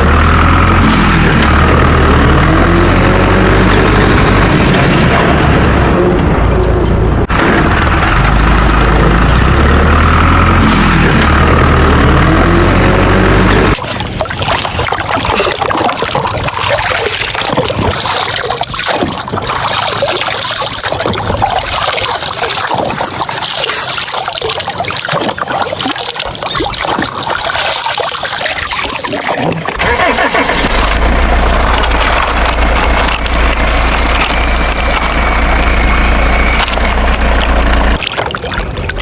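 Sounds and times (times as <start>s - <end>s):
low engine drone: 0.0s - 39.0s
water spraying and splashing: 10.4s - 39.0s.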